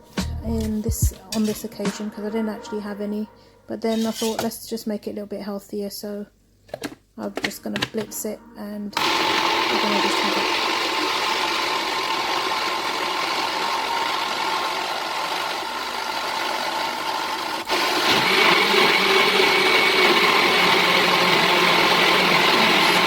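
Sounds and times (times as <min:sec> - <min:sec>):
blender running: 0:09.0 - 0:23.0.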